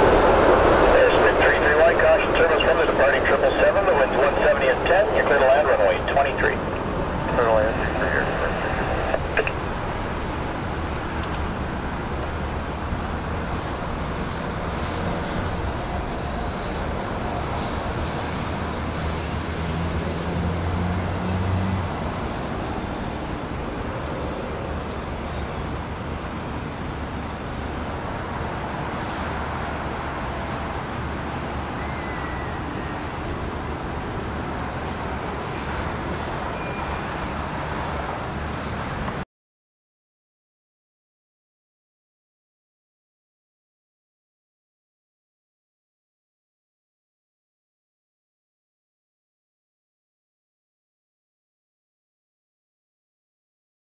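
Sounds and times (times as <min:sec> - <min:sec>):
distant engines rumbling: 0:00.0 - 0:39.2
wind: 0:00.0 - 0:39.2.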